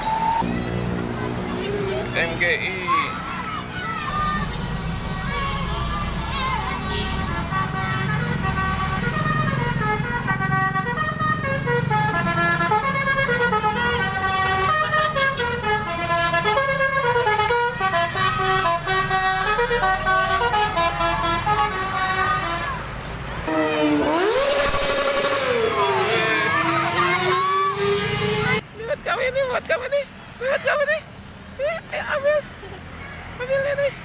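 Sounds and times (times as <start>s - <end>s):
rising siren-like glide: 0.0s - 0.5s, 23.5s - 28.6s
bus engine running: 0.0s - 2.5s, 3.1s - 30.4s
bus multi-tone horn tune: 4.1s - 28.6s.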